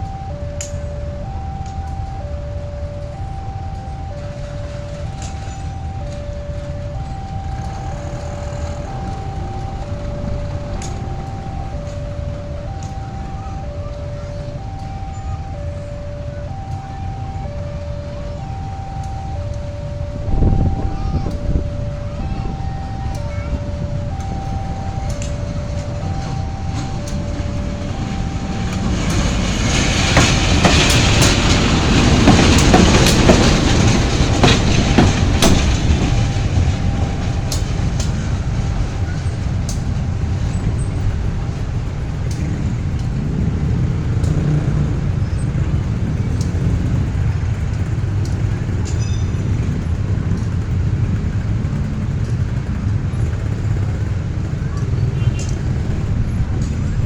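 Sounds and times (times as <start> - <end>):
two-note warning signal: 0.0 - 50.3
locomotive engine rumble: 0.0 - 57.0
wheel clacks over rail joints: 22.5 - 57.0.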